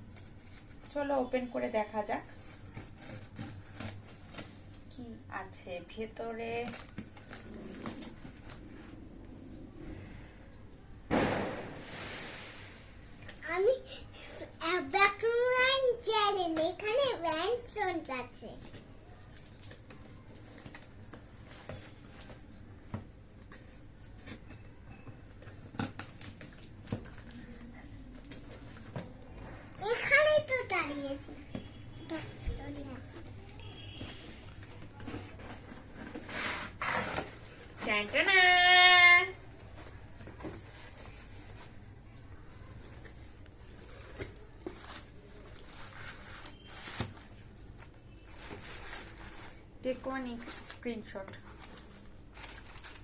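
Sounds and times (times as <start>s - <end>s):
packaging rustling and clicking: 6.6s - 8.7s, 50.3s - 53.0s
packaging rustling: 42.6s - 53.0s.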